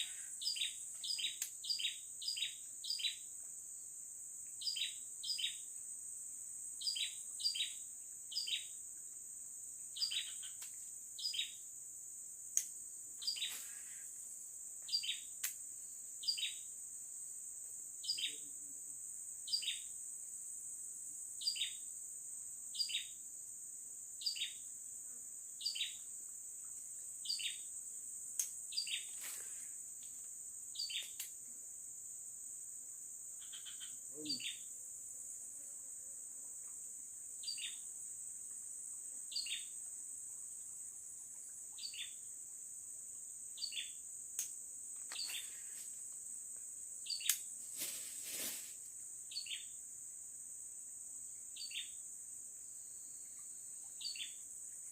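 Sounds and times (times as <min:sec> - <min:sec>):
insects droning: 0:00.0 - 0:54.9
noisy rustle: 0:47.6 - 0:48.9.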